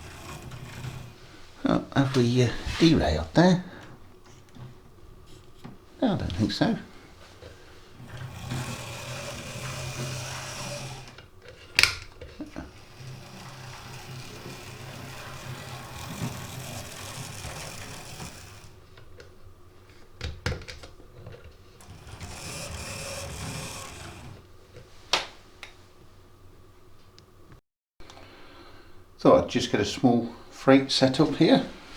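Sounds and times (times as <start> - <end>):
model train motor whirring: 0.0 - 3.6, 6.2 - 19.2, 21.7 - 24.5.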